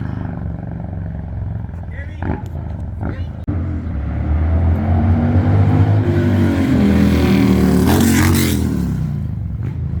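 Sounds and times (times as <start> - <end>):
loud motorcycle engine revving: 0.0 - 10.0.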